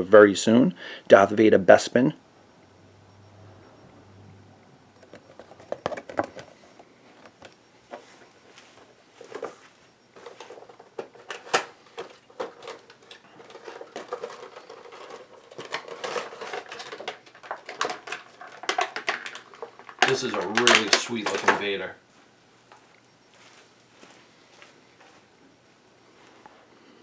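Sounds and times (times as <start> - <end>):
packaging rustling: 5.0 - 9.6, 10.2 - 21.6.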